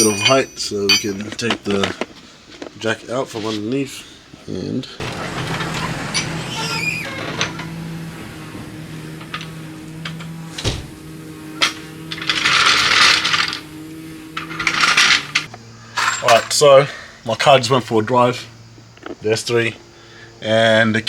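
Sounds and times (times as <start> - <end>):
metal tools clinking: 0.0 - 2.0, 5.0 - 16.7
low hum: 5.0 - 15.9
rattling clatter: 5.0 - 16.6.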